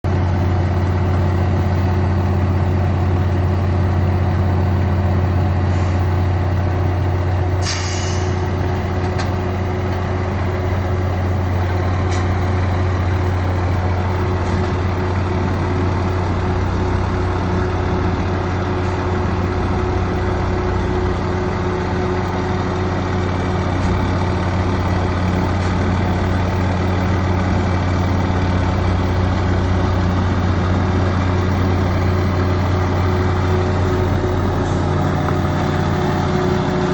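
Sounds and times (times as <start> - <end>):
diesel engine idling: 0.0 - 36.9
air brake hiss: 7.6 - 8.4.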